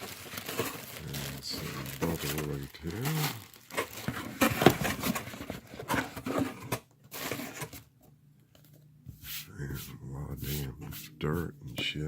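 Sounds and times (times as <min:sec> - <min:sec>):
bubble wrap crinkling: 0:00.0 - 0:06.4.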